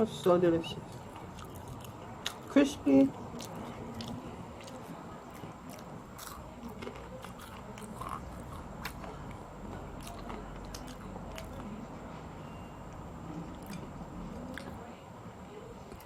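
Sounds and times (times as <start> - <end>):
crunchy chewing: 0.8 - 2.6, 3.2 - 11.8, 12.9 - 14.8.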